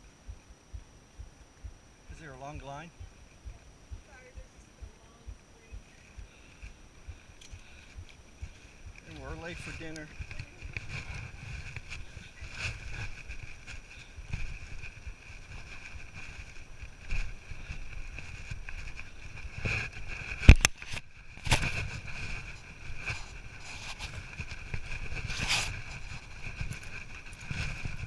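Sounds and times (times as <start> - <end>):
steady high buzz: 0.0 - 28.0
wind rumbling on microphone: 0.0 - 28.0
footsteps on rock trail: 0.7 - 28.0.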